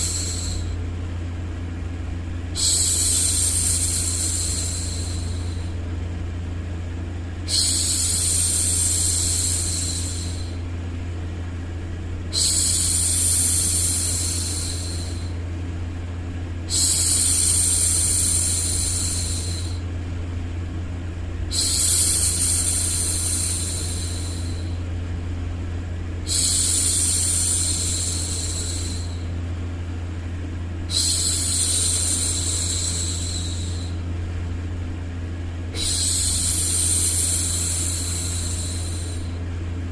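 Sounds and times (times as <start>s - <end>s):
low white noise hum: 0.0s - 39.9s
woman shushing: 7.5s - 10.6s, 12.3s - 15.3s, 30.9s - 34.0s, 35.8s - 39.4s.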